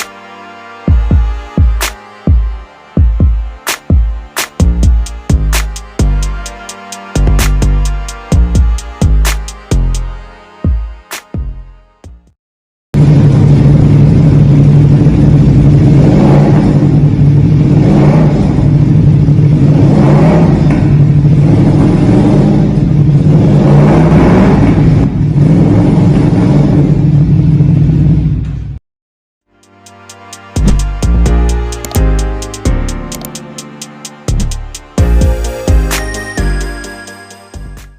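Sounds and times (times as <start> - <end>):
motorcycle engine revving: 13.0 - 28.6.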